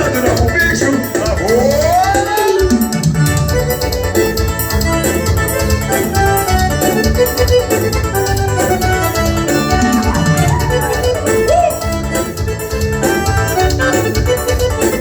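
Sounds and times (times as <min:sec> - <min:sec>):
bass and drum beat: 0:00.0 - 0:15.0
keyboard melody: 0:00.0 - 0:15.0.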